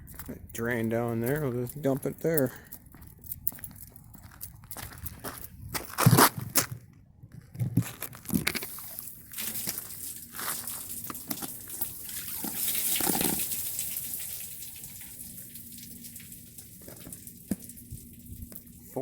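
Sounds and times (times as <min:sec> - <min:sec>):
water poured into a drain: 0:08.6 - 0:19.0.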